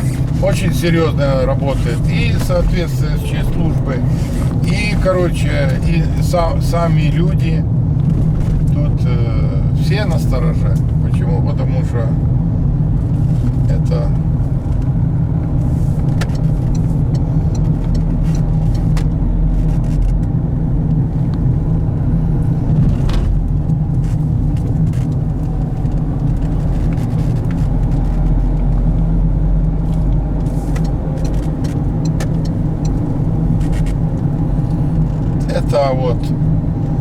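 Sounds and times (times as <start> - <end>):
engine and tyre rumble: 0.0 - 37.0.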